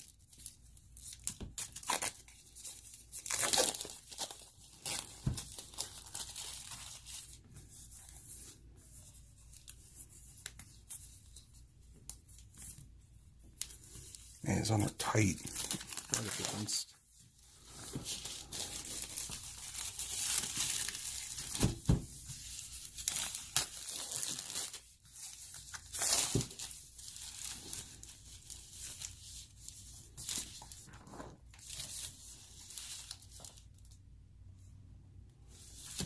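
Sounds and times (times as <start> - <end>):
plastic shrink wrap tearing: 0.0 - 7.3, 13.6 - 16.8, 18.0 - 21.8, 22.4 - 29.2.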